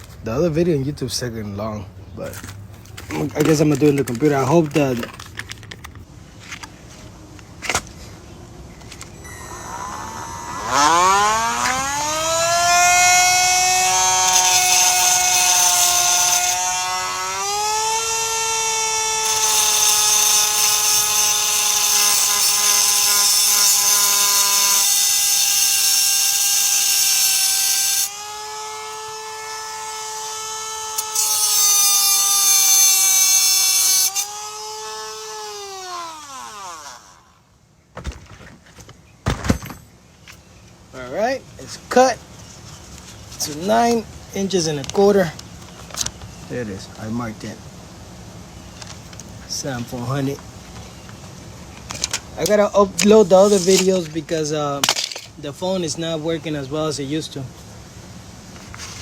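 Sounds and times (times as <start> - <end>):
power tool motor whine: 8.9 - 37.4
loud grinding hiss: 9.2 - 37.3.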